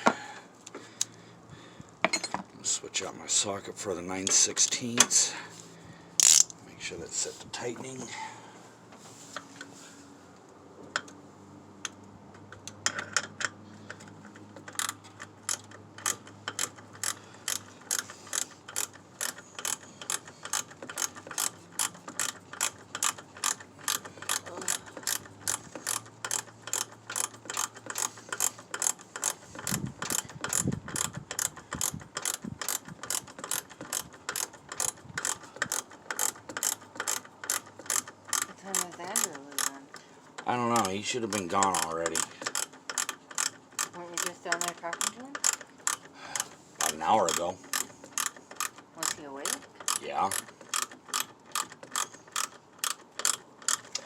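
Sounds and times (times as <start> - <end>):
socket ratchet clicking: 6.2 - 6.6, 14.6 - 39.8, 40.8 - 54.0.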